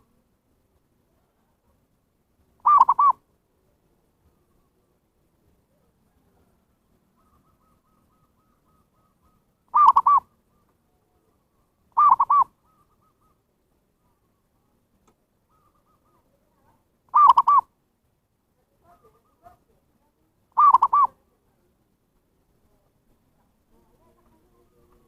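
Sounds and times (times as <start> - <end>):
dove cooing: 2.6 - 3.2, 5.8 - 13.4, 15.4 - 17.7, 20.6 - 21.2.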